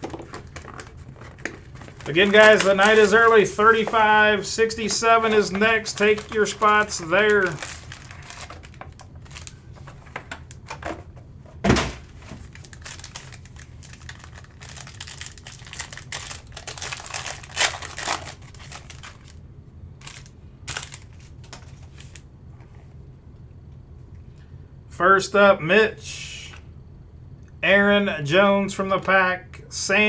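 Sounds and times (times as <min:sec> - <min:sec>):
card wrappers crinkling and tearing: 0:00.0 - 0:10.8, 0:12.0 - 0:19.4, 0:20.0 - 0:22.3
low steady hum: 0:00.0 - 0:30.0.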